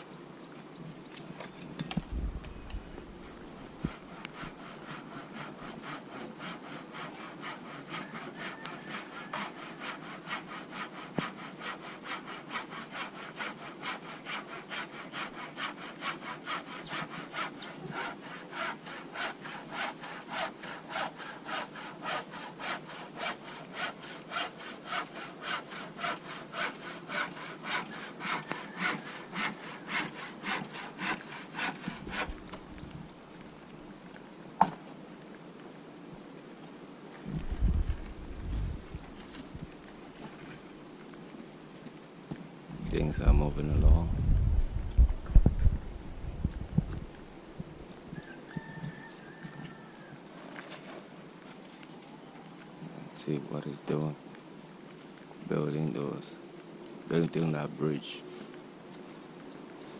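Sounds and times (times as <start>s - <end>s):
hand saw cutting timber: 3.2s - 32.6s.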